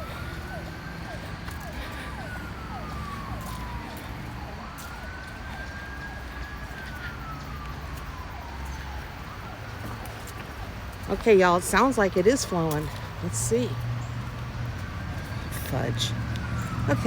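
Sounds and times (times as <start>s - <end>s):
siren wailing: 0.0s - 17.0s.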